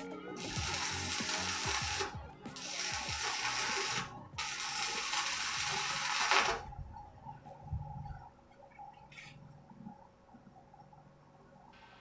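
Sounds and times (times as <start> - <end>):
arc welding hissing and crackling: 0.0 - 6.8
background music: 0.0 - 7.2.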